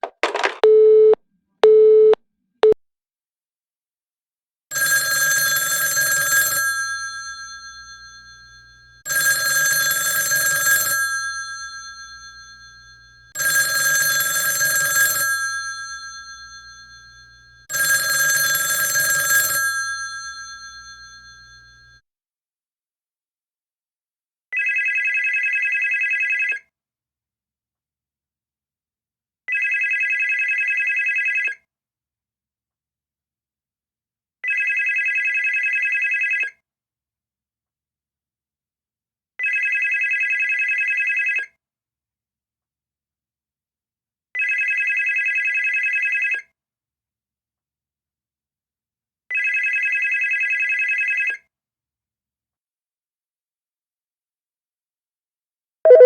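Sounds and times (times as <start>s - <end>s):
telephone ringing: 0.0s - 2.8s, 4.7s - 22.0s.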